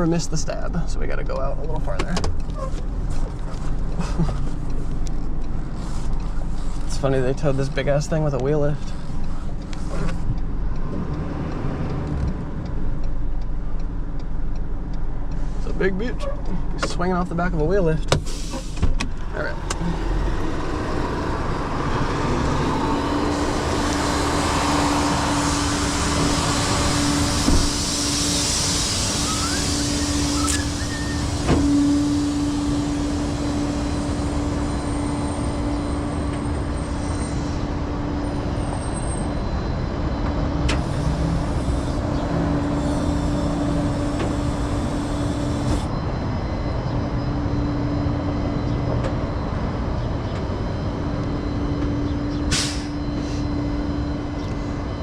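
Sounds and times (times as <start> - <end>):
tow truck engine running: 0.0 - 55.0
steady droning tone: 19.2 - 55.0.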